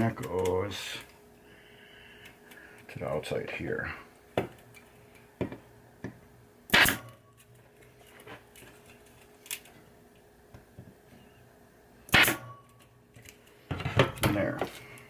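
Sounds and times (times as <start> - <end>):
pneumatic staple gun firing: 6.7 - 7.2, 12.1 - 12.5.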